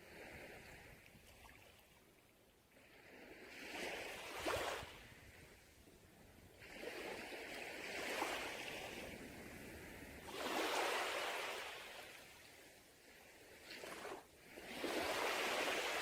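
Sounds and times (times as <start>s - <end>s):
sea waves washing up beach: 6.6s - 16.0s.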